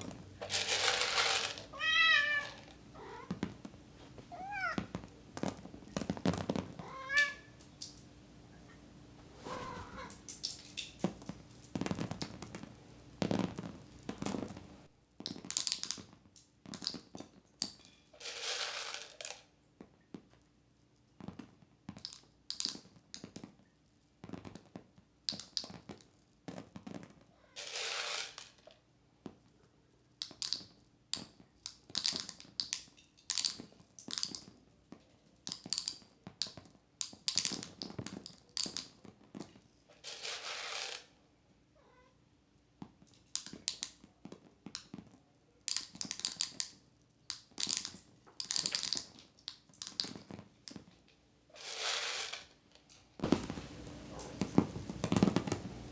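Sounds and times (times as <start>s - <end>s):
rustling bursts: 0.0s - 7.6s.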